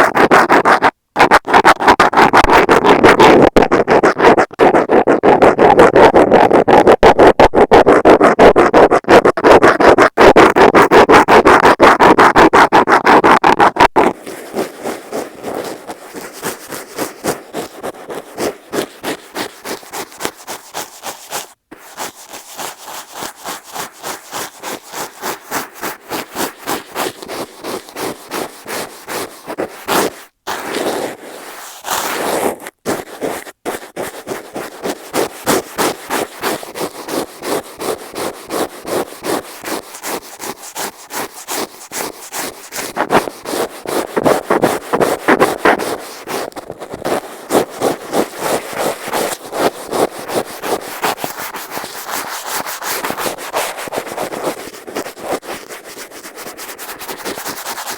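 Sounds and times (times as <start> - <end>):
metal scaler scratching microphone: 10.4 - 55.7
brush sweeping over microphone: 14.1 - 57.9.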